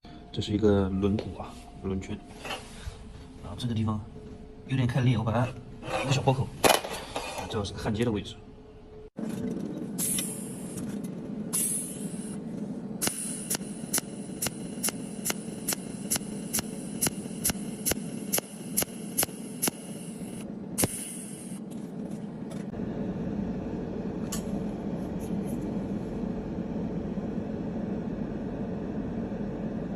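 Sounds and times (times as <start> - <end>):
machine hum: 8.2 - 29.9
welding machine discharge clicks: 13.0 - 21.6.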